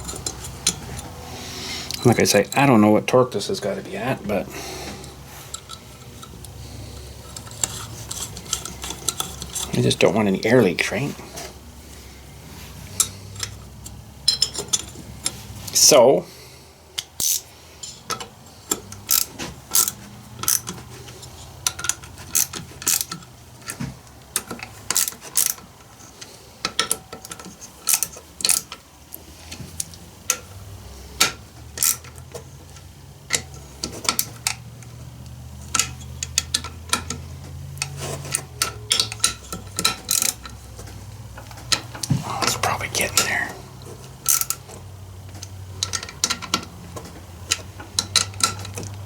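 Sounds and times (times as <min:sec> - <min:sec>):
socket ratchet clicking: 0:17.0 - 0:17.5, 0:18.7 - 0:20.7, 0:21.6 - 0:23.3, 0:24.3 - 0:25.6.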